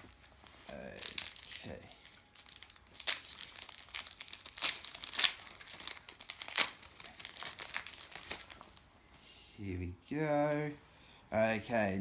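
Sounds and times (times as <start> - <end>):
wrapper tearing and crinkling: 0.0 - 8.9.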